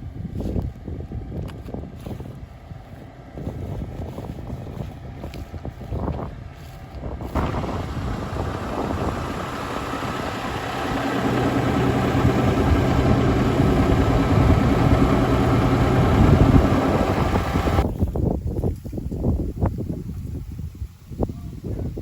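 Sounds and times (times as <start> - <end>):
diesel engine running: 6.7 - 17.8
low drone: 7.4 - 17.8.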